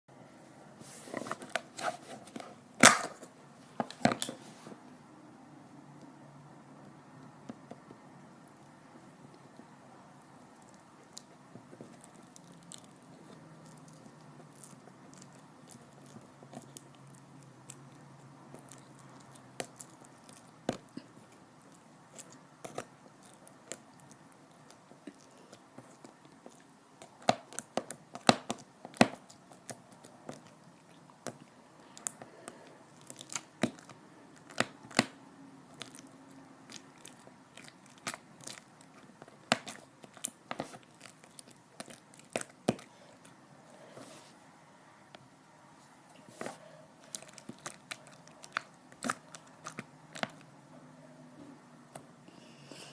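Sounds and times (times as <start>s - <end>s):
foam slime crackling and popping: 33.0s - 42.8s.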